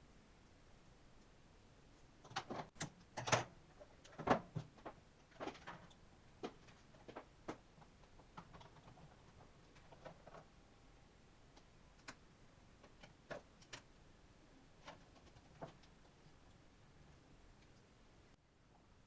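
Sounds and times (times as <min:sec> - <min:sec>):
laptop parts clicking and knocking: 0:02.2 - 0:10.5.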